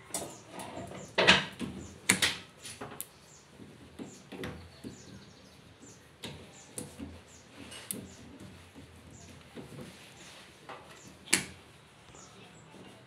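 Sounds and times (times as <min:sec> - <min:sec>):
sharp knocks and clicks: 0:00.1 - 0:05.3.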